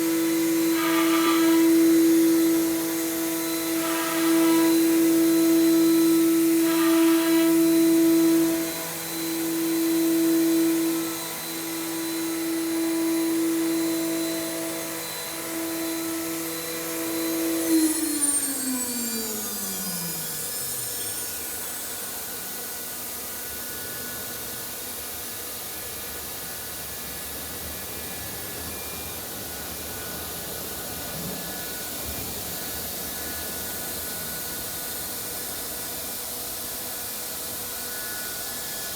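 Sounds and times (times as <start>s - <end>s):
router spindle whining: 0.0s - 25.6s.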